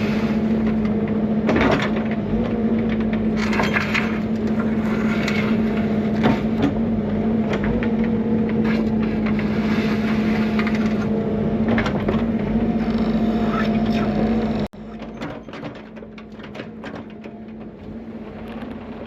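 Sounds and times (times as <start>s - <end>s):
diesel engine running: 0.0s - 19.0s
bucket scraping gravel: 3.6s - 6.5s, 8.8s - 11.0s.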